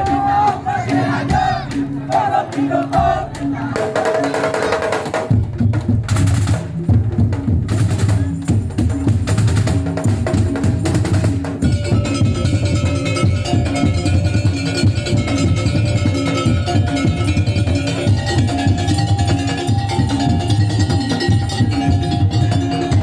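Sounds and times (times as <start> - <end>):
heavy deep drums: 0.0 - 23.0.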